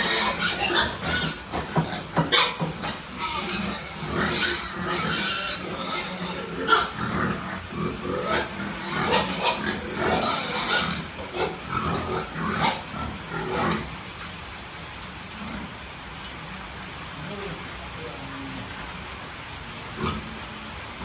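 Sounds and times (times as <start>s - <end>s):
piglets squealing and grunting: 0.0s - 14.1s.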